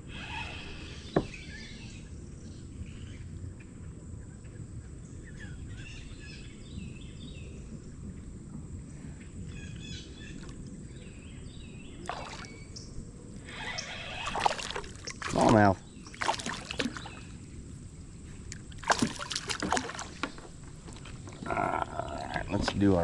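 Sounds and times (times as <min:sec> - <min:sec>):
songbirds chirping: 0:00.0 - 0:23.0.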